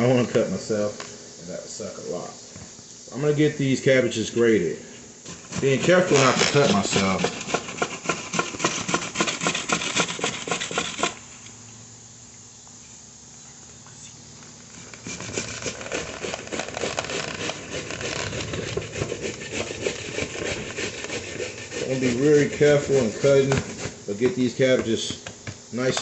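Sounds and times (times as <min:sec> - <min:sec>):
cabbage scraping on grater: 0:05.3 - 0:11.2, 0:14.8 - 0:24.6.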